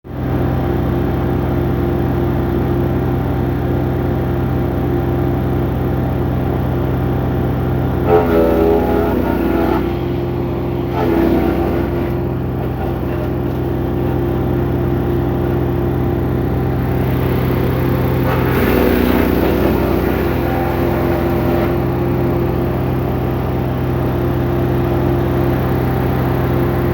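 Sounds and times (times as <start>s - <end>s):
wood chipper engine drone: 0.1s - 26.9s.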